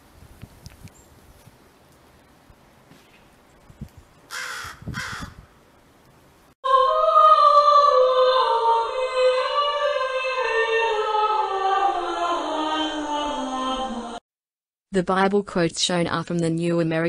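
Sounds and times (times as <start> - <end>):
crow cawing: 4.3 - 5.4
choir-like music: 6.7 - 14.2.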